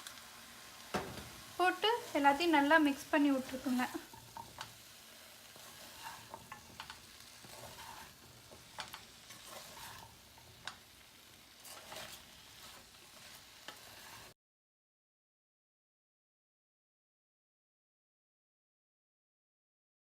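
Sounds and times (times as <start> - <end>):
food sizzling in a pan: 0.0 - 14.4
spoon scraping a pan: 0.0 - 14.4.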